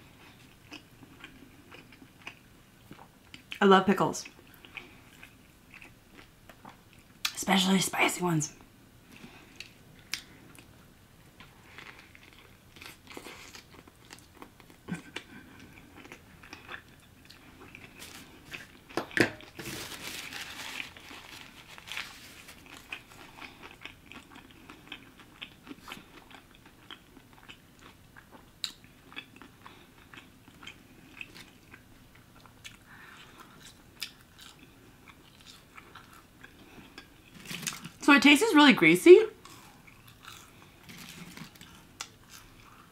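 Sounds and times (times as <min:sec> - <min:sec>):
biting and chewing food: 0:11.4 - 0:38.0, 0:39.4 - 0:42.9.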